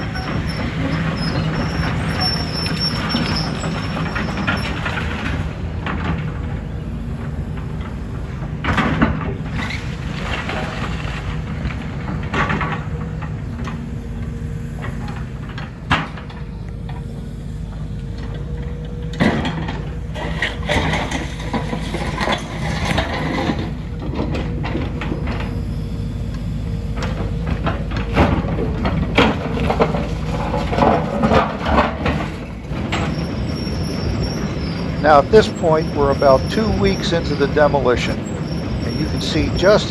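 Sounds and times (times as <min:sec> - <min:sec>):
diesel engine running: 0:00.0 - 0:39.9
debris knocking and clattering: 0:19.2 - 0:25.2, 0:27.1 - 0:33.4.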